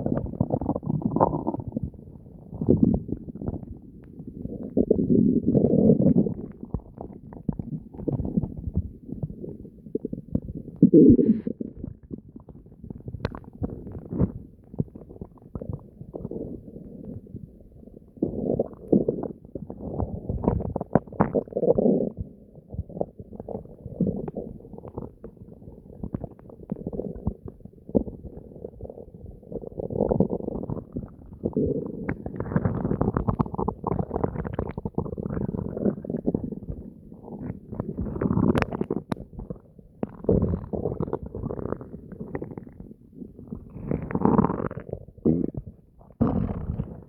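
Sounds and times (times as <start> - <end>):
stomach gurgling and growling: 0.0 - 47.0.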